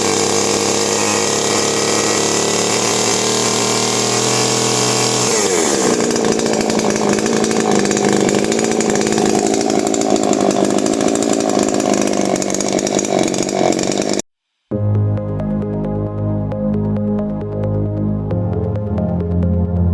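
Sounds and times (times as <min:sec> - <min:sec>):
chainsaw engine revving and idling: 0:00.0 - 0:14.3.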